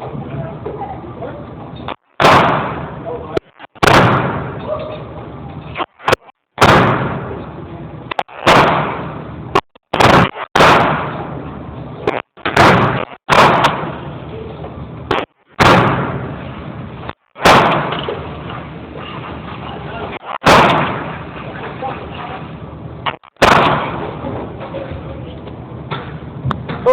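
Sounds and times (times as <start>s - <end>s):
handgun shots ringing: 23.4s - 24.0s.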